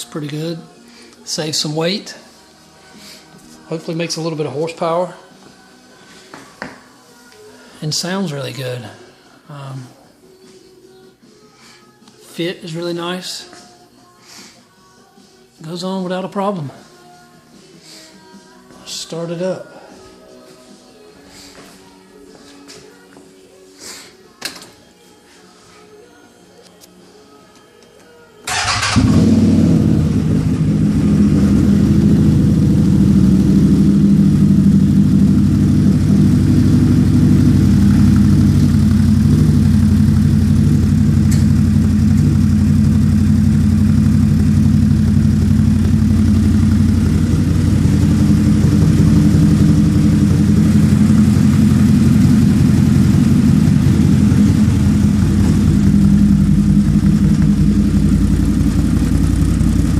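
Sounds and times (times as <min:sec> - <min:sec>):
engine idling with deep exhaust tone: 0:29.0 - 0:59.9.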